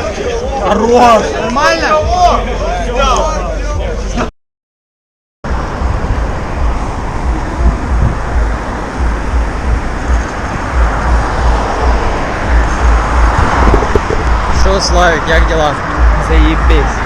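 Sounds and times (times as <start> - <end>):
wind buffeting microphone: 5.5 - 17.0.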